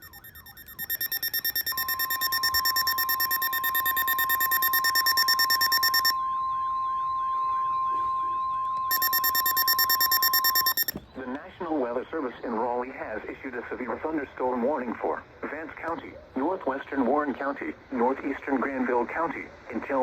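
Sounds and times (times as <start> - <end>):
rapid electronic alarm beeping: 0.0 - 6.2, 8.9 - 11.0
steady warning alarm tone: 0.0 - 11.0.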